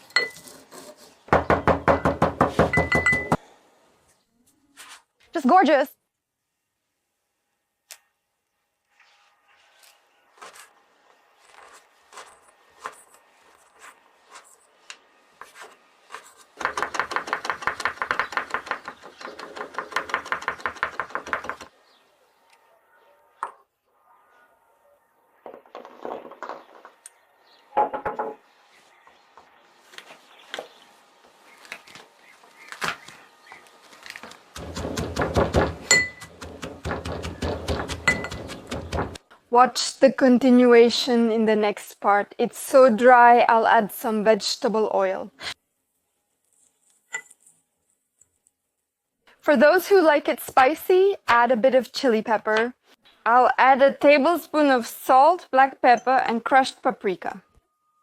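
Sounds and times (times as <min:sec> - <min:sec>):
pestle pounding in a mortar: 0:16.6 - 0:21.7, 0:34.6 - 0:39.2.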